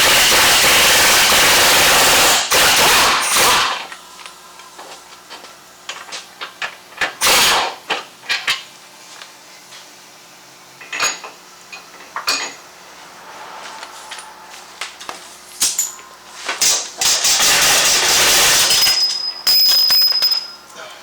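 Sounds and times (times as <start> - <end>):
power tool running loudly: 0.0 - 4.0, 7.2 - 7.8, 16.6 - 19.0.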